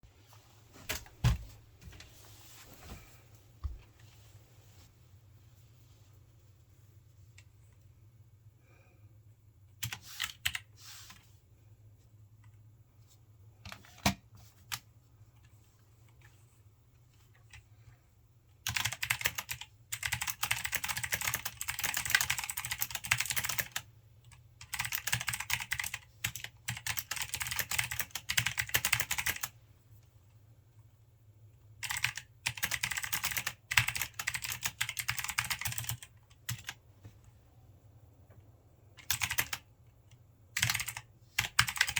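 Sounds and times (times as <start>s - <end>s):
mechanical keyboard typing: 9.8s - 10.7s, 18.6s - 29.5s, 31.8s - 36.8s, 39.0s - 39.7s, 40.5s - 41.9s.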